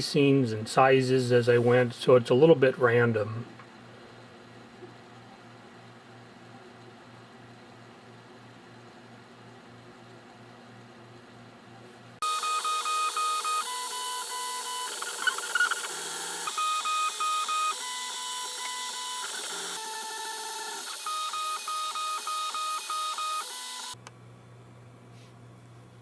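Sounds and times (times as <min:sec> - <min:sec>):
stepper motors whining: 0:12.2 - 0:24.0.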